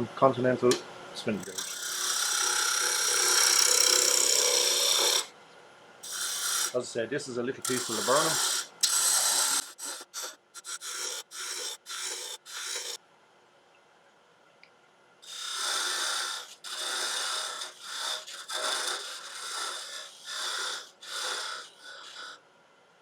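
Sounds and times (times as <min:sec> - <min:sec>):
lathe gouge hissing cuts: 0:01.4 - 0:05.3, 0:06.0 - 0:06.8, 0:07.4 - 0:13.0, 0:15.2 - 0:22.4.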